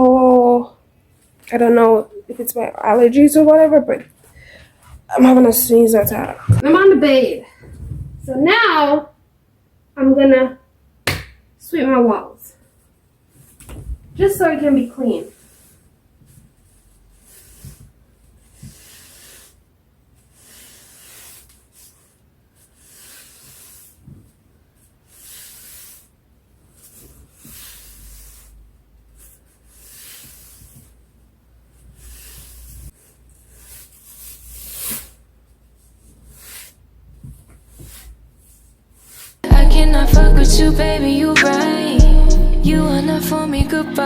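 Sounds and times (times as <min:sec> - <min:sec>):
broom sweeping against a wall: 0:15.2 - 0:19.6, 0:20.2 - 0:31.1, 0:31.8 - 0:39.4.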